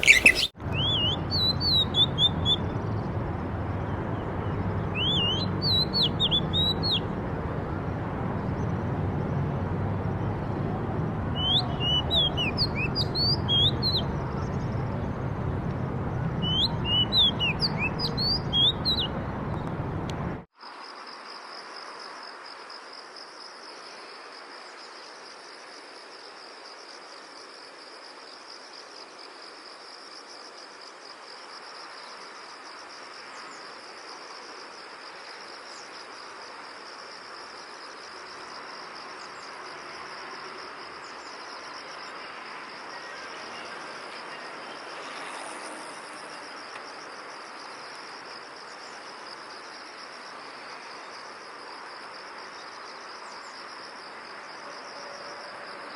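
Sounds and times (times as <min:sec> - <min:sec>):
songbirds chirping: 0:00.0 - 0:20.4.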